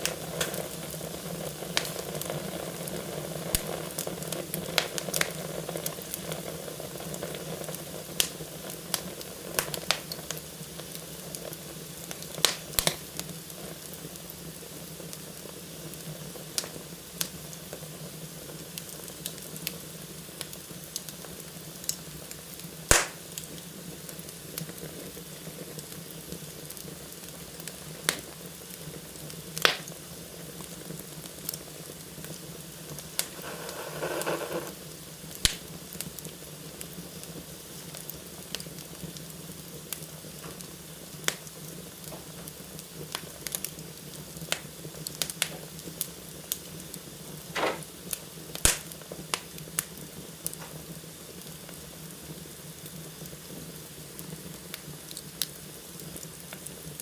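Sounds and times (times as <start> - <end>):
fire hissing: 0.0 - 17.5, 18.1 - 38.9
fire crackling and popping: 0.0 - 57.0.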